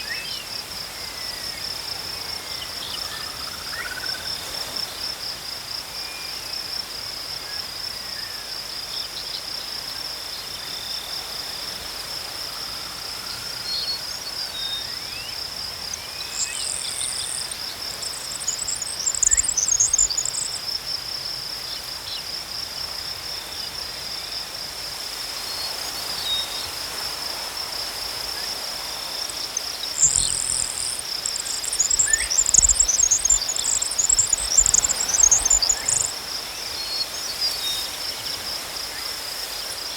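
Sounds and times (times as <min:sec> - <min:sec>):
insects chirring: 0:00.0 - 0:39.9
small bird twittering: 0:30.0 - 0:36.0.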